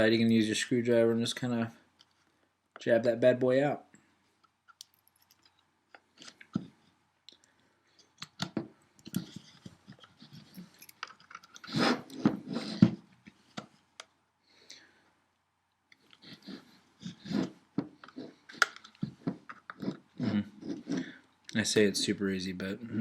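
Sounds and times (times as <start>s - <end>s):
screwdriver clicking and scraping: 4.7s - 5.6s, 8.0s - 12.9s.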